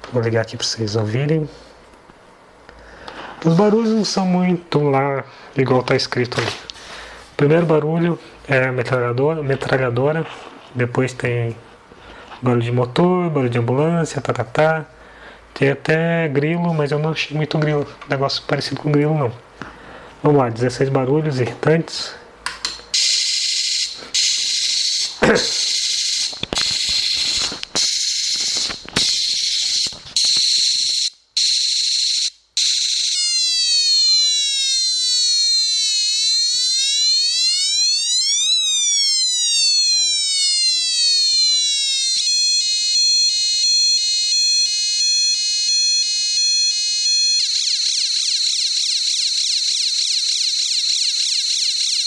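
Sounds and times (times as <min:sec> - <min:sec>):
siren-like electronic tone: 0:23.0 - 0:52.0.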